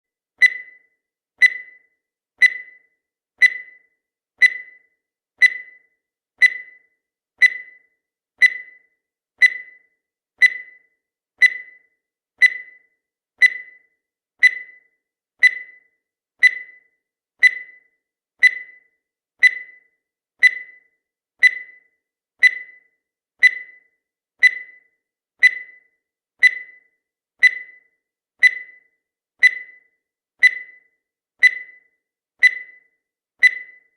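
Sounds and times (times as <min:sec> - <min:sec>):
high electronic timer ticks: 0:00.4 - 0:33.9.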